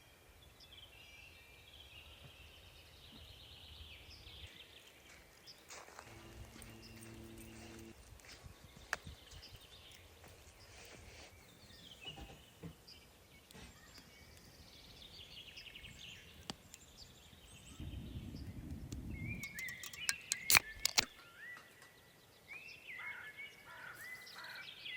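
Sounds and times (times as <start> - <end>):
songbirds chirping and trilling: 0.0 - 24.9
sharp clicks: 18.7 - 21.2.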